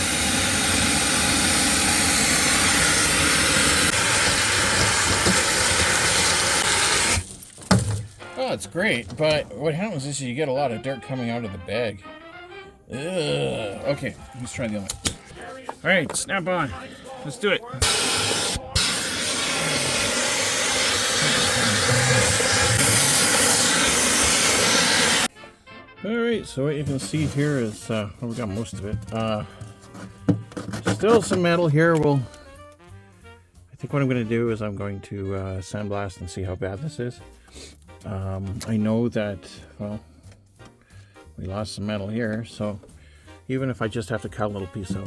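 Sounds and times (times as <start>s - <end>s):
air vacuum gun hissing: 0.0s - 7.3s, 17.8s - 25.3s.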